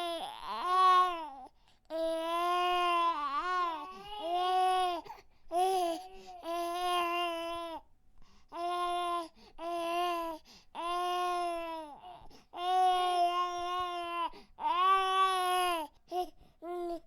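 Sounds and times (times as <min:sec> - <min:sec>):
baby crying: 0:02.1 - 0:07.8.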